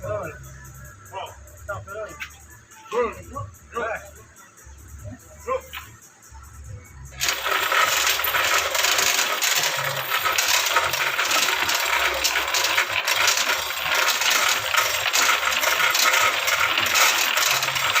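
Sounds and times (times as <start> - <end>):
metal lathe running: 7.2 - 18.0.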